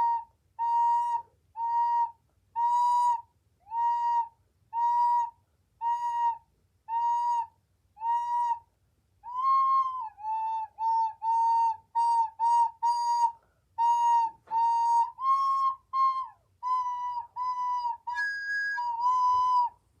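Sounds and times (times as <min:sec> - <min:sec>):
recorder playing high notes: 0:09.3 - 0:19.7.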